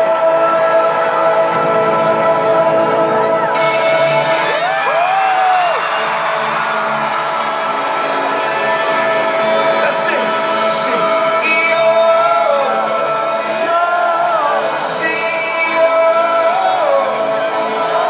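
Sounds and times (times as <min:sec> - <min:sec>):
crowd singing and shouting: 0:00.0 - 0:18.0
rock band playing live: 0:01.6 - 0:18.0.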